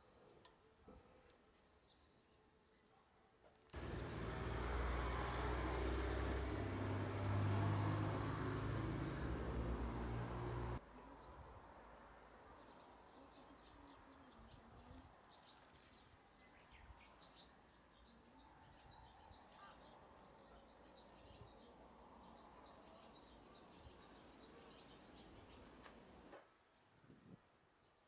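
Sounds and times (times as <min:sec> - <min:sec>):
outdoor background hiss: 0:00.0 - 0:28.0
small birds chirping: 0:05.7 - 0:26.9.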